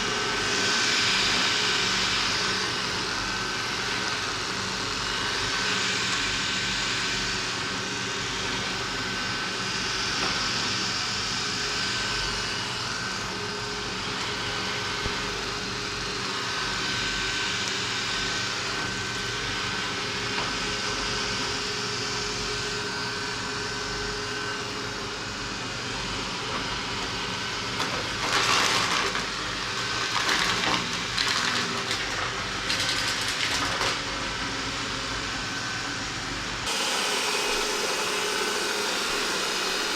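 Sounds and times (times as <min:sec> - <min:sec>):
rough vacuum noises: 0:00.0 - 0:39.9
robot vacuum whirring: 0:26.3 - 0:39.9.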